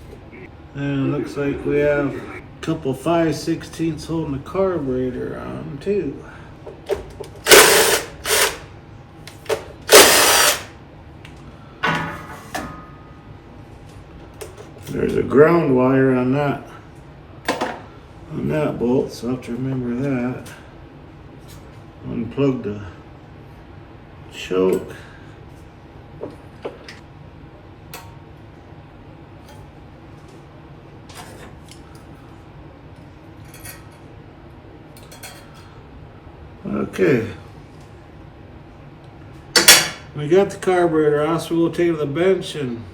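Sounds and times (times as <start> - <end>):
steady low hum: 0.0 - 42.9
power drill whining: 7.5 - 8.7, 9.9 - 10.7.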